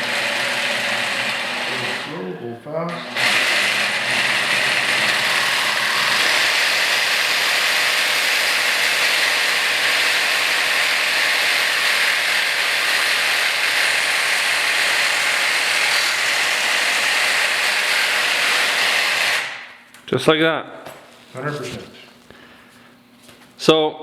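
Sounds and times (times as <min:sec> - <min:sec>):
electric jigsaw cutting plastic: 0:00.0 - 0:02.3, 0:02.9 - 0:19.7.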